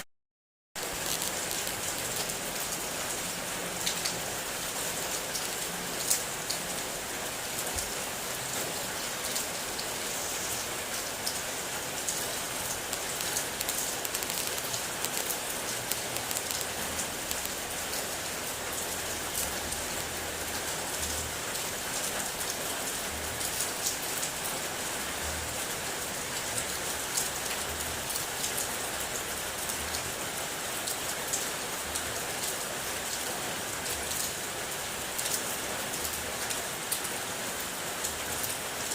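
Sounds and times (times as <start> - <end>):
raindrops tapping on hard surface: 0.8 - 2.9, 10.9 - 24.5.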